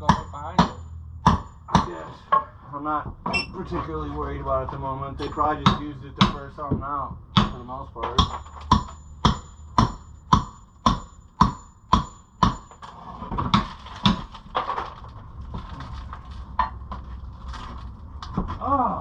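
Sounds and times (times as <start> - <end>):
wood cracking and knocking: 6.3 - 9.0, 12.4 - 18.7.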